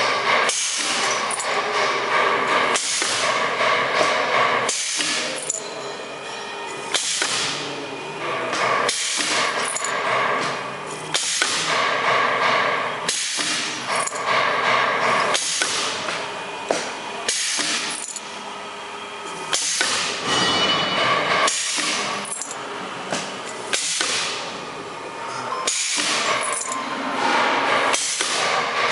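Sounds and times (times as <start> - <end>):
packing machine running: 0.0 - 28.9
sharp machine click: 13.1 - 15.9.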